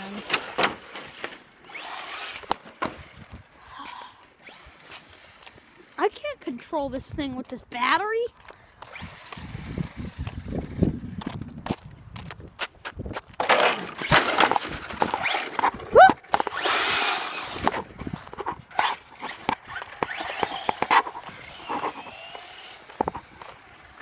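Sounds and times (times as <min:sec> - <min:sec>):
rc car tyres skidding: 0:00.0 - 0:03.4, 0:08.8 - 0:11.7, 0:13.4 - 0:24.0
rc car body clattering: 0:13.3 - 0:24.0.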